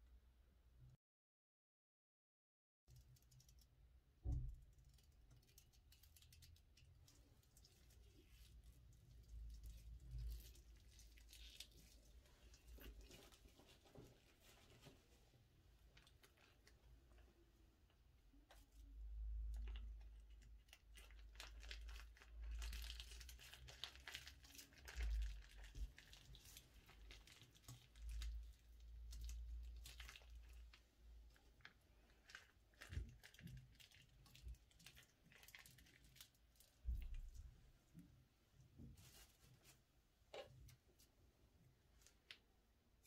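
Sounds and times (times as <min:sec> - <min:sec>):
plastic bag crinkling: 0:04.8 - 0:15.2, 0:15.8 - 0:17.2, 0:19.5 - 0:37.4
slime clicks and crackles: 0:19.4 - 0:37.0.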